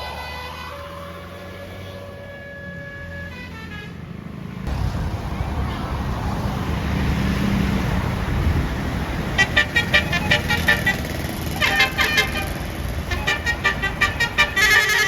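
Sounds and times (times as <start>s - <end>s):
bus multi-tone horn: 0.0s - 4.3s, 9.2s - 15.0s
road traffic rumble: 0.0s - 15.0s.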